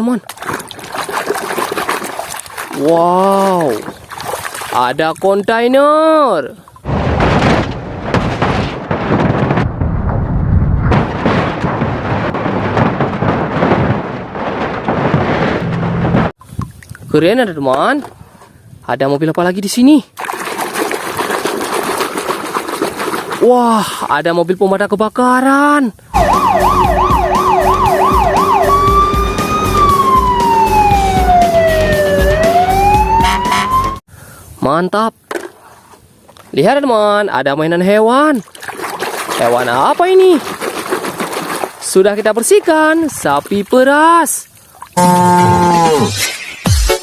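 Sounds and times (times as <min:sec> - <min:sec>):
electronic fire engine siren: 0:26.1 - 0:34.0, 0:45.0 - 0:46.0.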